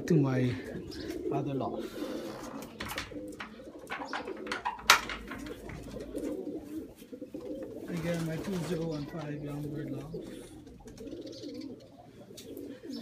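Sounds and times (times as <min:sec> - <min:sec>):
pigeons cooing: 0:00.0 - 0:13.0
clicks and knocks: 0:02.8 - 0:06.1.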